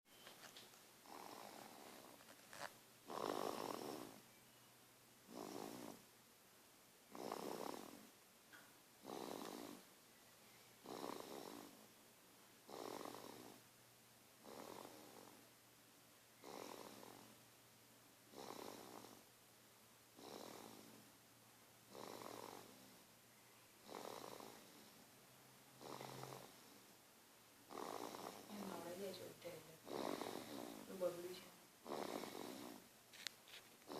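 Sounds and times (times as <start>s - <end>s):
baby snoring softly: 1.0s - 4.4s, 5.3s - 6.1s, 7.1s - 8.2s, 9.0s - 9.9s, 10.7s - 12.0s, 12.6s - 13.7s, 14.4s - 15.5s, 16.4s - 17.4s, 18.3s - 19.3s, 20.2s - 21.1s, 21.9s - 23.1s, 23.8s - 25.0s, 25.8s - 26.9s, 27.7s - 32.9s, 33.5s - 33.9s.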